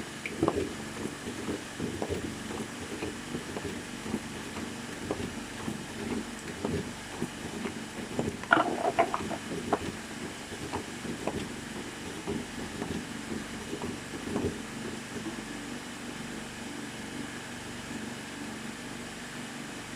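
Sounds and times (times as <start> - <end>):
machine motor hum: 0.0 - 17.2
mechanical clicks and knocks: 8.4 - 9.4.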